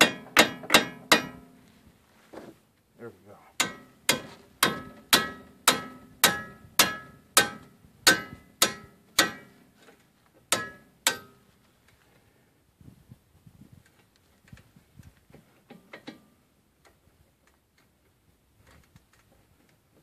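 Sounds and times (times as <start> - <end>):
hammer striking steel socket: 3.6 - 9.4, 10.5 - 11.4.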